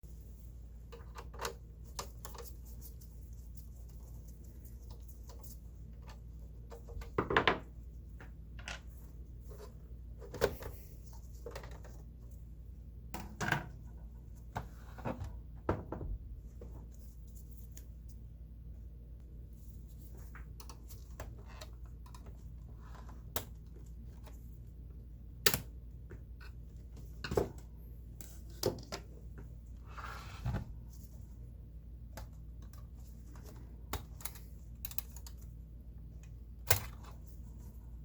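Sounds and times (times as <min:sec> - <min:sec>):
computer case parts clicking: 0:33.9 - 0:35.5.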